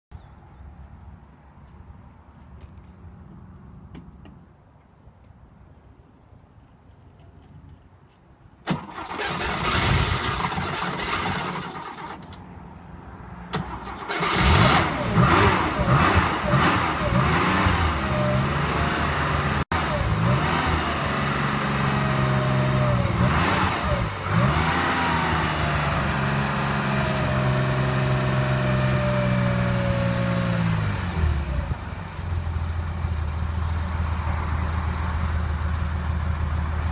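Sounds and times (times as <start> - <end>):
car engine revving: 13.6 - 31.9
car engine idling: 31.3 - 36.9.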